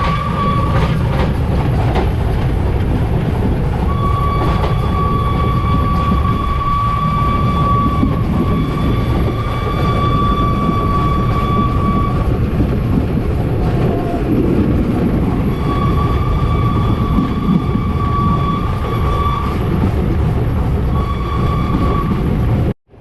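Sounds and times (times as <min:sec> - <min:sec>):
steam locomotive rumble and hiss: 0:00.0 - 0:22.8.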